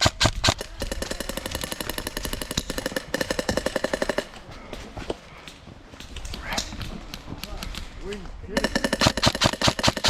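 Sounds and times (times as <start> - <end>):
airsoft gun rapid burst: 8.6 - 10.0.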